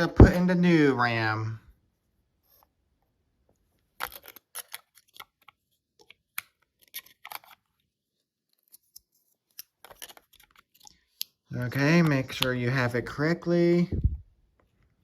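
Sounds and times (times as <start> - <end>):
small clicks and plastic rustles: 3.4 - 12.7.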